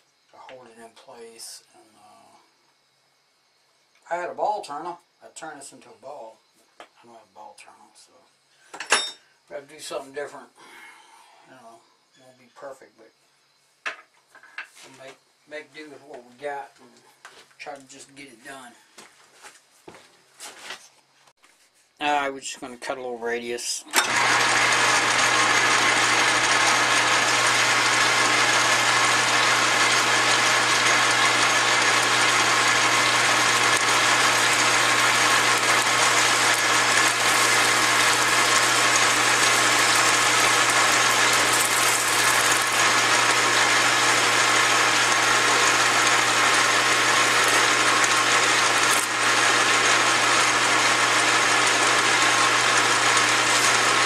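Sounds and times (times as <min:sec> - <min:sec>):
metal lathe running: 0:23.9 - 0:54.0.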